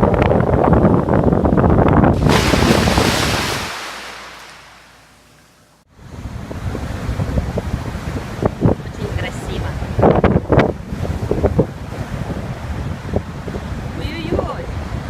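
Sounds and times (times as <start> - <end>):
wind buffeting microphone: 0.4 - 5.0
sea surf washing: 2.2 - 5.4.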